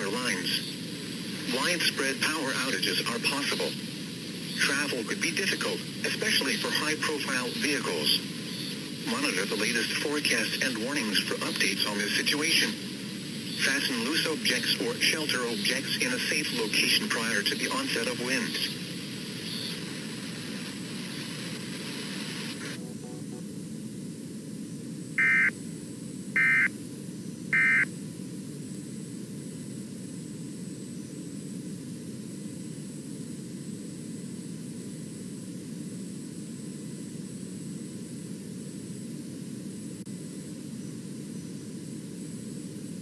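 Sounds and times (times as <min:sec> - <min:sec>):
radio hiss: 0:00.0 - 0:43.0
warbling data bursts: 0:25.2 - 0:25.5.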